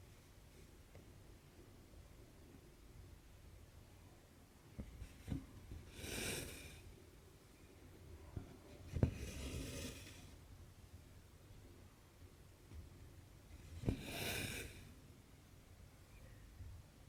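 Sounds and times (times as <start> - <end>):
needle tapping through cloth: 4.8 - 5.9.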